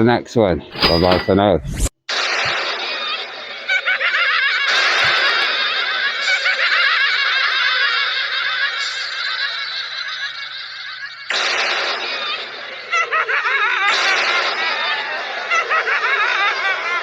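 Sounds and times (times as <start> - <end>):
high-pitched squeaky laughter: 3.1 - 11.3, 12.0 - 17.0.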